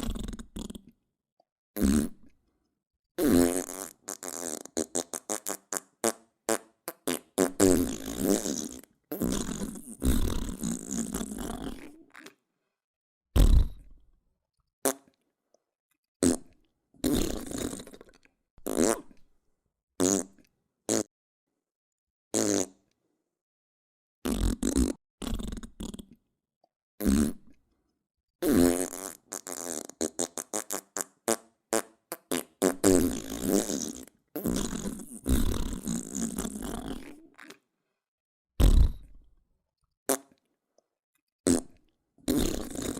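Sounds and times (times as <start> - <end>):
fart sound effects: 0.0 - 0.9, 1.8 - 2.3, 3.2 - 12.3, 13.4 - 14.0, 16.2 - 18.0, 18.6 - 19.2, 20.0 - 21.1, 22.4 - 22.8, 24.2 - 26.1, 27.0 - 27.5, 28.4 - 37.6, 38.6 - 39.2, 41.5 - 42.9.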